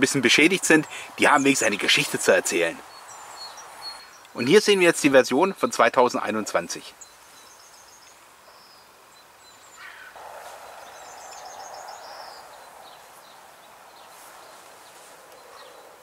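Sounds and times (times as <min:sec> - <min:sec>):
soft steady noise: 0:00.0 - 0:16.0
faint bird chirps: 0:06.8 - 0:16.0
gliding bird call: 0:09.8 - 0:16.0.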